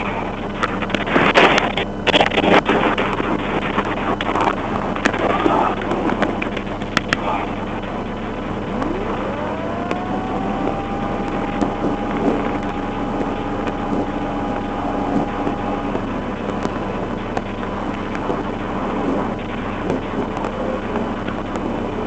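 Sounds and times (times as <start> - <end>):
rising whine: 0.0 - 22.0
car engine idling: 4.6 - 22.0
wind on microphone: 7.3 - 22.0.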